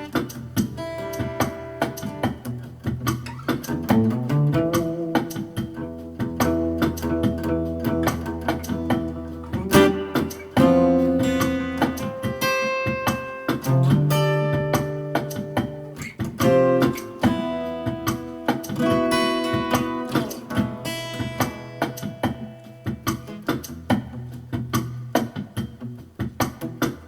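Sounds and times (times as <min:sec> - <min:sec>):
acoustic guitar music: 0:00.0 - 0:27.0.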